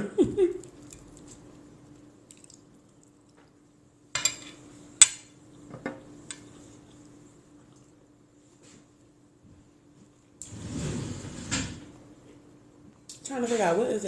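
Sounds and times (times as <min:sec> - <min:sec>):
faint steady hum: 0:00.0 - 0:14.0
cutlery clinking on a plate: 0:04.2 - 0:05.2.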